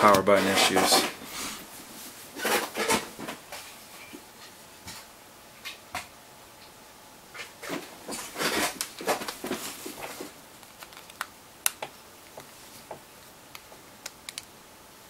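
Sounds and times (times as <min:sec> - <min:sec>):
hands handling smartphone: 0:08.7 - 0:12.6.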